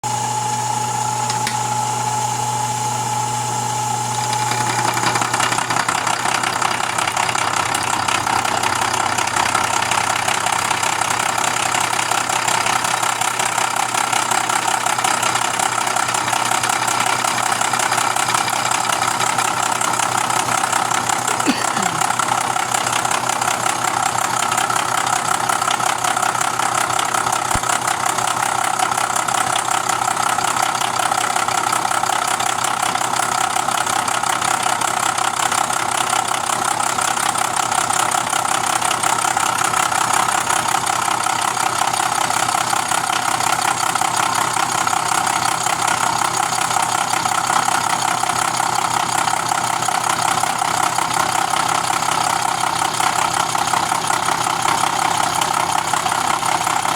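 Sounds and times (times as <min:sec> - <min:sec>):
milling machine humming: 0:00.0 - 0:13.2, 0:14.8 - 0:23.0.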